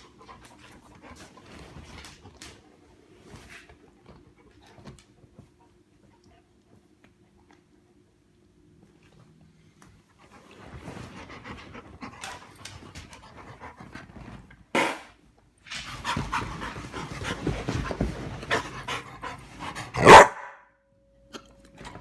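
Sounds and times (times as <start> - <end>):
dog panting: 15.9 - 20.1
dog barking: 20.0 - 20.6.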